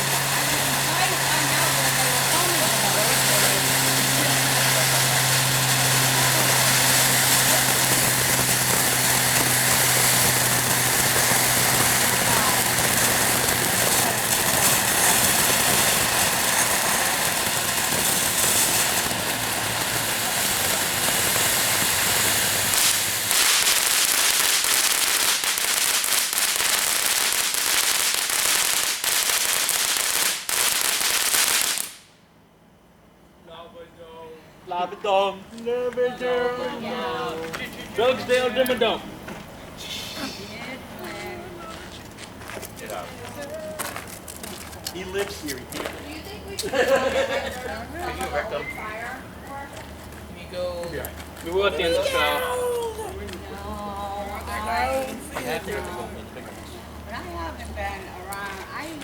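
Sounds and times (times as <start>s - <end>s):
firework fountain hissing and crackling: 0.0s - 32.2s, 34.3s - 59.0s
sharp firework cracks: 0.0s - 32.2s.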